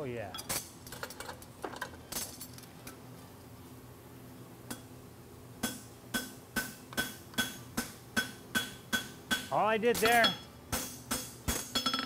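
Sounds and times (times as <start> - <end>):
hammer striking horseshoe on anvil: 5.6 - 12.0.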